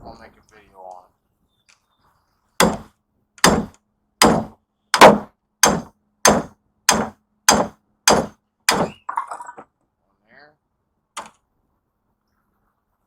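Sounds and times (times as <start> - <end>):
hammer striking steel chisel: 2.6 - 9.0.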